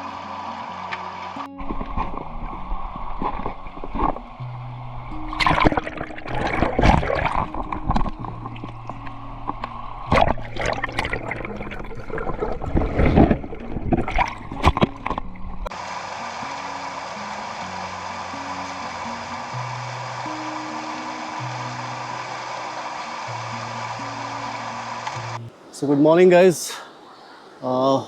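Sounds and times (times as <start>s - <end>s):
music with low notes: 0.0s - 25.6s
splashy bursts of noise: 5.1s - 25.4s
steady hiss: 15.7s - 28.0s.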